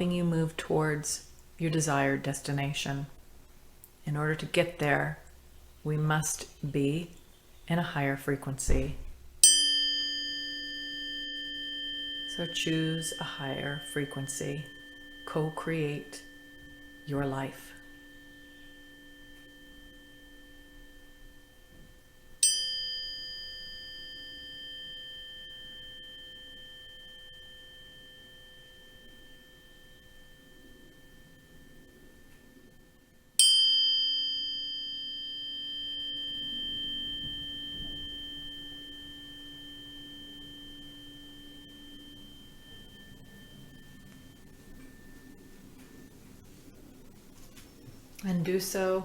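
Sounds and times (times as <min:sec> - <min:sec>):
faint steady high tone: 0:03.9 - 0:49.0
struck metal ringing tone: 0:08.7 - 0:49.0.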